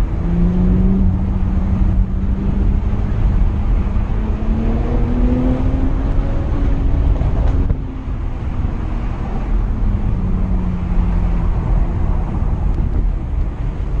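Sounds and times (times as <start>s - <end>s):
wind and road rumble: 0.0s - 14.0s.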